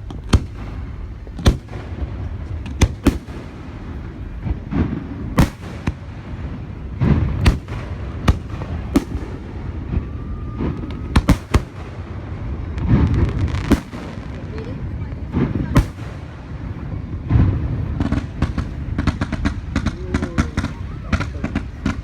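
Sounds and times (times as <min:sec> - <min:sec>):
fireworks booms and bangs: 0:00.0 - 0:22.0
rising whistle of firework shell: 0:09.1 - 0:11.8.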